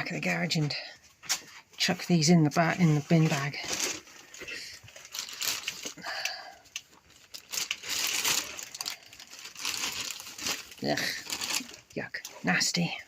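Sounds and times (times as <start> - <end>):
plastic bin bag rustling: 1.4 - 6.1, 6.8 - 12.9.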